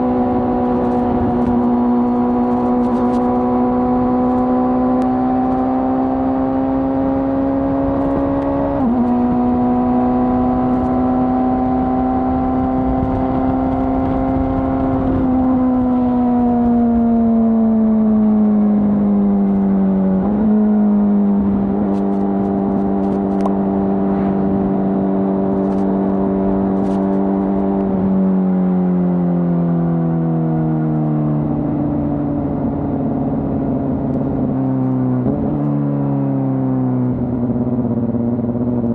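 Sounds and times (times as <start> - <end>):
motorcycle engine revving: 0.0 - 17.5, 18.2 - 28.2
road and wind rumble: 0.0 - 38.9.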